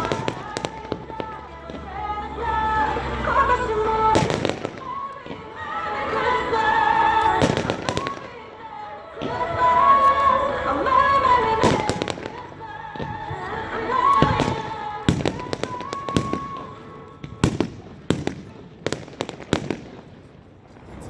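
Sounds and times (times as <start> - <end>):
fireworks bursting in sharp bangs: 0.0 - 1.9, 4.2 - 5.6, 7.1 - 8.5, 11.6 - 13.4, 14.1 - 21.0.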